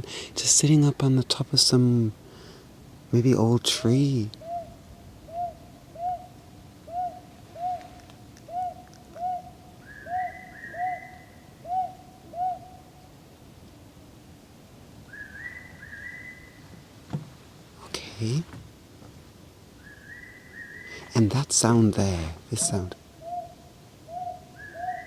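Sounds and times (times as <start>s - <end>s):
owl hooting: 3.7s - 13.1s, 15.1s - 16.7s, 19.8s - 25.0s
bird's two-part whistle: 8.5s - 12.7s, 15.1s - 16.6s, 23.2s - 25.0s.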